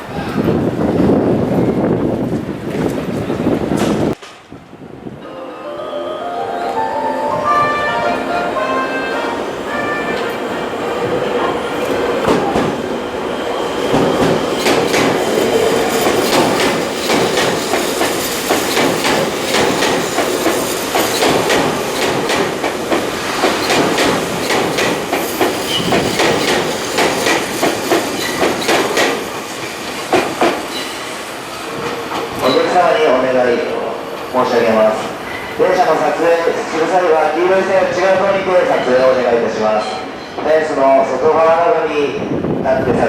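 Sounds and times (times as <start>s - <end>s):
train wheels clacking over rail joints: 13.9s - 31.1s.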